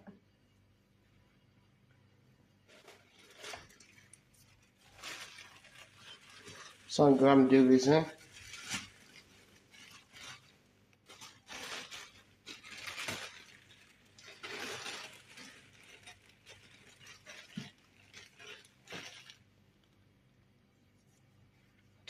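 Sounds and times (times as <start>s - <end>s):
rustling: 2.6s - 20.0s.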